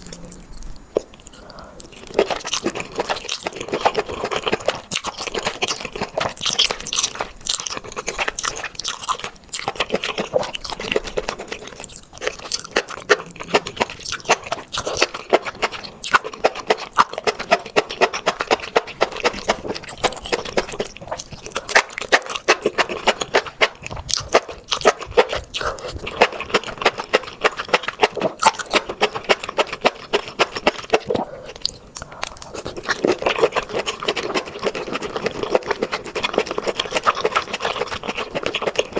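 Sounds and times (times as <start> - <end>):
person chewing crunchy food: 0.0 - 38.9.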